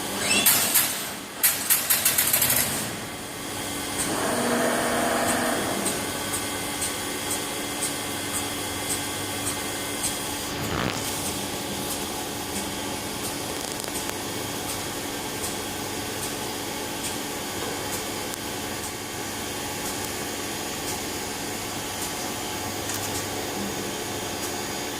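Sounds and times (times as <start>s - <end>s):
steady machine tones: 0.0s - 10.5s
machine whirring hiss: 0.1s - 18.2s.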